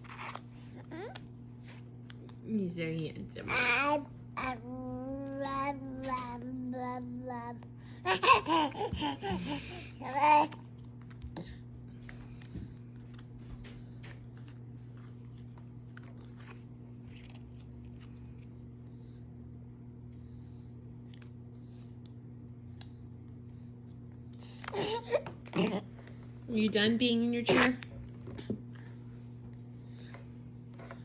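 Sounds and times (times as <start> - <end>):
steady low hum: 0.0 - 31.0
baby babbling: 3.5 - 10.6.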